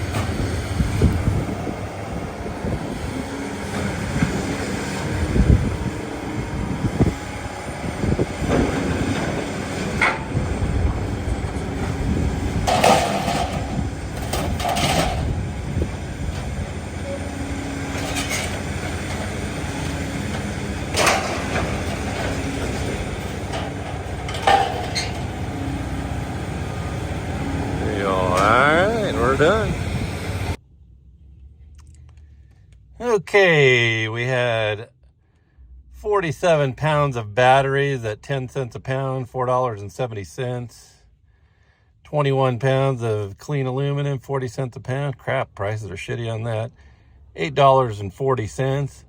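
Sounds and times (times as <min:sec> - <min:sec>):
engine running: 0:00.0 - 0:30.6
metal clanking on metal: 0:08.2 - 0:29.9.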